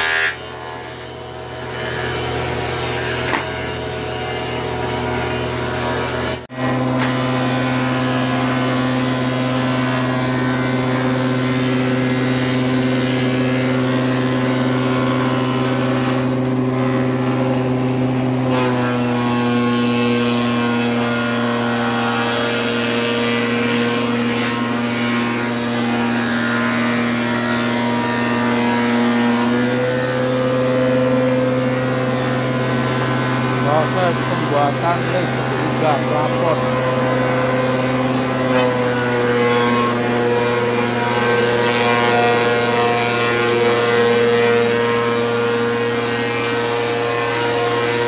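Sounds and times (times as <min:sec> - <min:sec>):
electric motor humming: 0:15.8 - 0:48.0.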